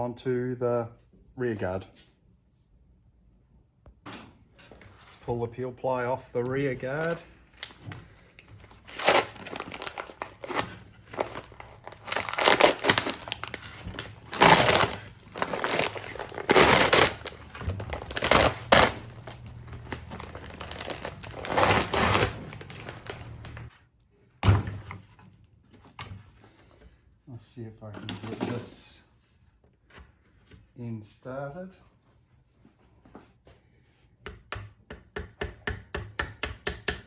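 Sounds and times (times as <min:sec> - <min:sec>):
peel ply tearing and crackling: 0:08.7 - 0:23.7.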